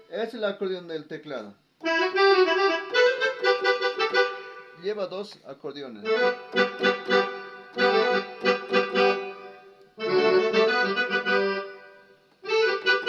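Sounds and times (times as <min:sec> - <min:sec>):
keyboard accordion chords: 0:01.8 - 0:05.0, 0:06.0 - 0:13.0.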